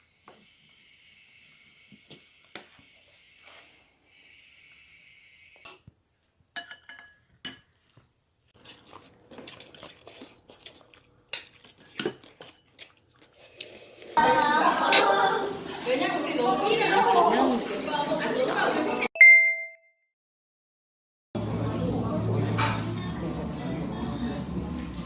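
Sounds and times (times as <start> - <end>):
dishes and utensils clattering: 6.6 - 8.1, 11.4 - 12.9, 22.4 - 23.2.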